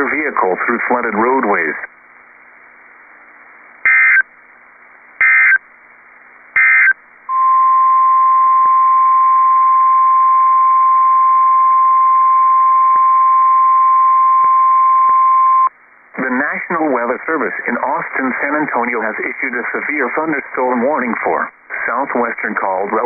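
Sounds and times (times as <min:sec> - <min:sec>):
steady alarm tone: 0:06.6 - 0:15.7.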